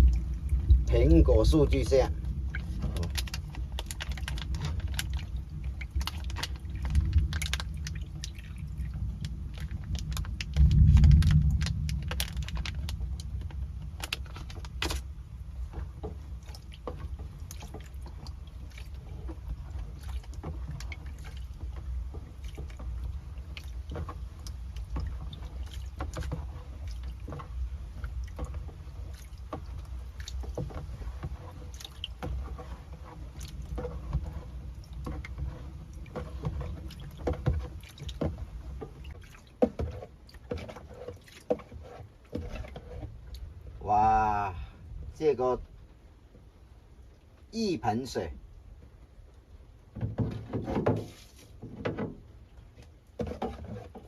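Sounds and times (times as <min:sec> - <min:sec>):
wind: 0:00.0 - 0:54.0
clicks and knocks of handling: 0:02.6 - 0:08.4, 0:09.2 - 0:43.5
heavy rain: 0:06.6 - 0:15.8.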